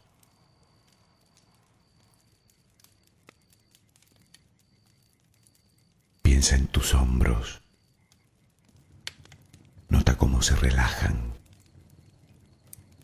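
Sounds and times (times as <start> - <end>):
bonfire crackling: 0.0 - 13.0.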